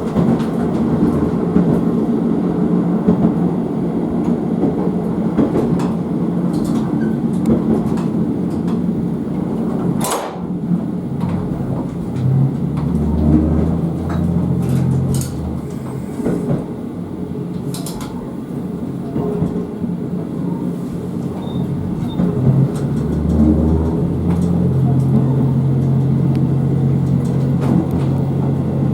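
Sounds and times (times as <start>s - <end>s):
rail noise with clicks: 0.0s - 28.9s
diesel engine humming: 10.7s - 19.4s, 20.1s - 28.9s.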